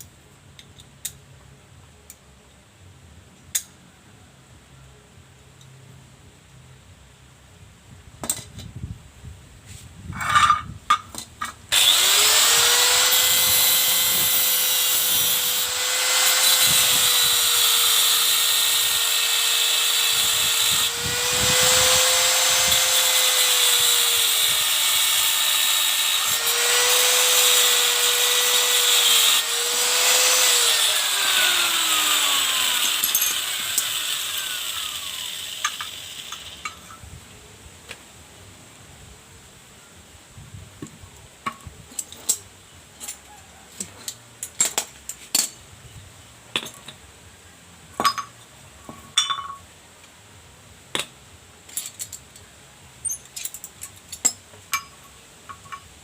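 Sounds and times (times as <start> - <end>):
power tool motor whining: 11.7 - 36.7.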